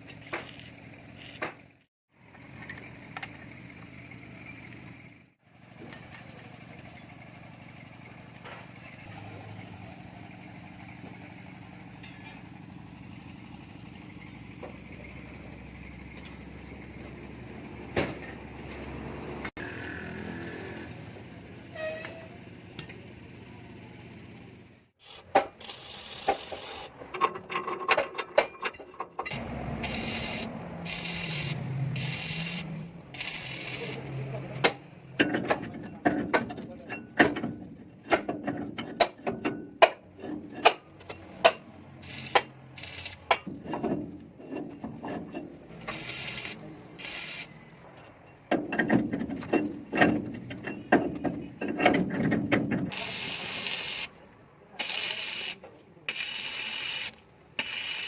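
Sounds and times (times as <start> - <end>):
metallic clicks and knocks: 27.0 - 29.4, 47.8 - 53.0
hissing bursts: 52.9 - 54.1, 54.8 - 58.0.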